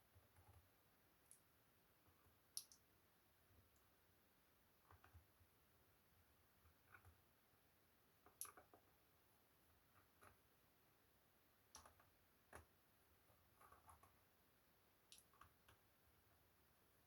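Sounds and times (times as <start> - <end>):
faint clicks and light taps: 0.0 - 2.9, 4.8 - 5.6, 6.5 - 7.4, 8.2 - 9.0, 9.6 - 10.6, 11.6 - 14.3, 15.0 - 16.4.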